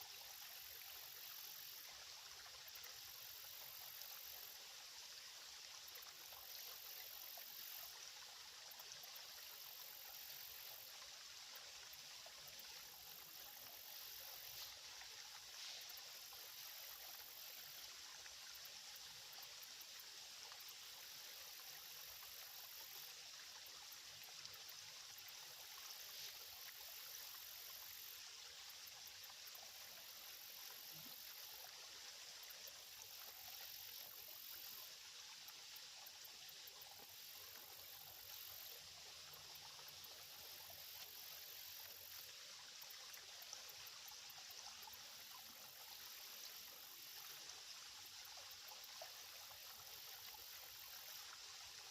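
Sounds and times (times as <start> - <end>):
creek trickling: 0.0 - 51.9.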